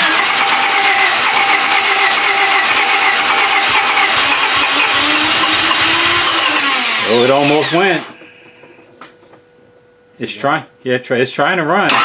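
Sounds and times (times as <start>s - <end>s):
starter motor cranking engine: 0.0s - 8.2s.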